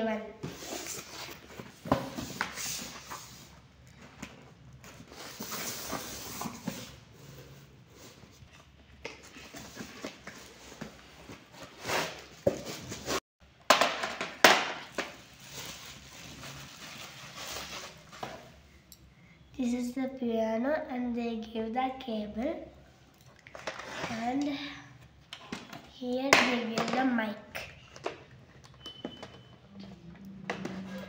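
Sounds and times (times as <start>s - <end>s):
rustling and scraping: 0.4s - 13.2s, 14.9s - 18.7s, 23.4s - 24.4s, 30.4s - 31.0s.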